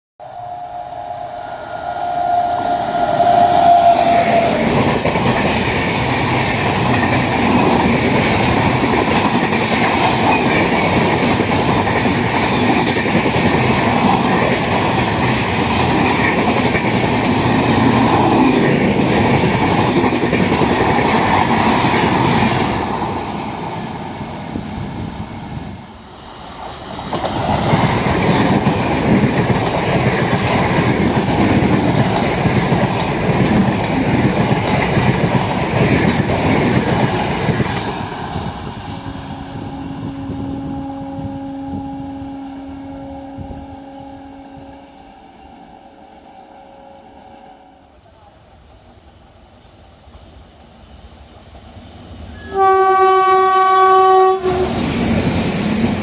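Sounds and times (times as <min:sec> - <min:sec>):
train horn two-tone blast: 0:00.2 - 0:05.4, 0:38.4 - 0:48.3, 0:52.3 - 0:54.9
train wheels rumbling on rails: 0:00.2 - 0:46.0, 0:47.8 - 0:56.0.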